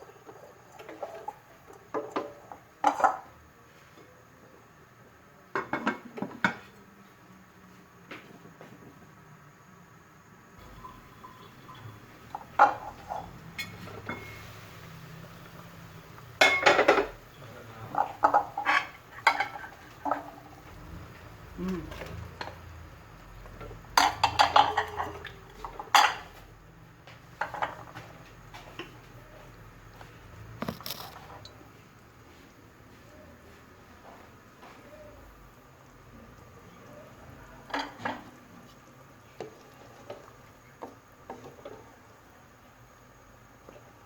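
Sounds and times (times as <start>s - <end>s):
metal cookware clattering: 10.6s - 14.5s, 16.4s - 17.2s, 17.9s - 20.6s, 23.9s - 26.4s
low steady hum: 10.6s - 27.0s.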